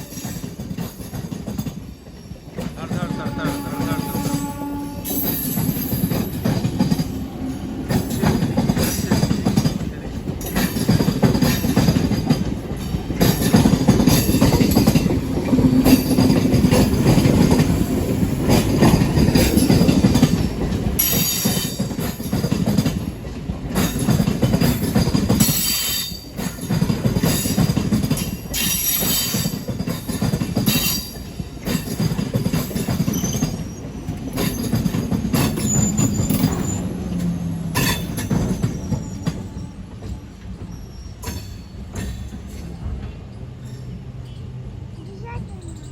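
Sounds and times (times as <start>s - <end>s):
train rumbling on rails: 0.0s - 45.9s
high-pitched wheel squeals: 33.1s - 34.8s, 35.4s - 37.1s, 37.8s - 39.8s, 40.4s - 41.8s.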